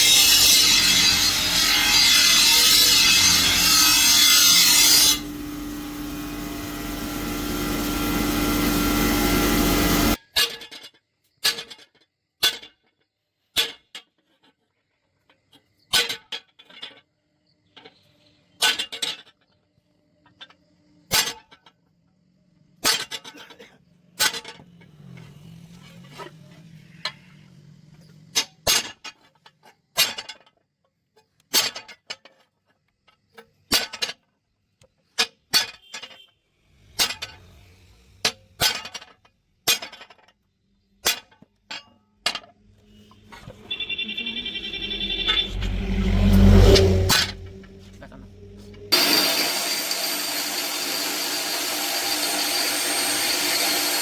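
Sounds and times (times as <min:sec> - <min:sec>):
metal grinding noise: 0:00.0 - 0:10.2, 0:23.0 - 0:29.1, 0:42.3 - 0:54.0.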